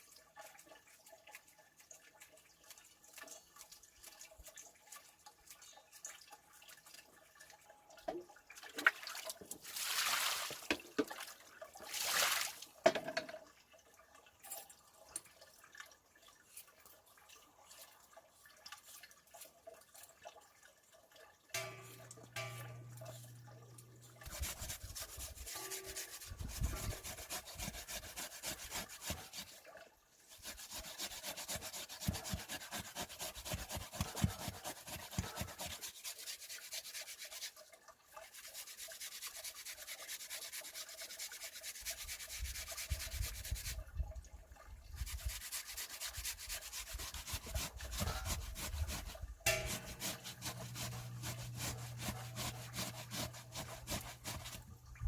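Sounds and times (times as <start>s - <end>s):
gritty rubbing and scrubbing: 24.2s - 29.6s, 30.3s - 37.5s, 45.0s - 54.7s.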